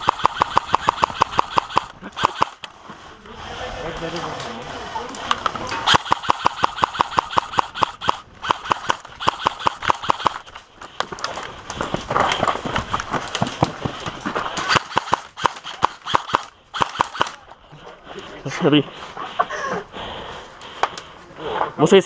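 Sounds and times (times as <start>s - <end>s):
airsoft guns firing rapid shots: 0.0s - 2.7s, 5.8s - 10.5s, 14.6s - 17.4s.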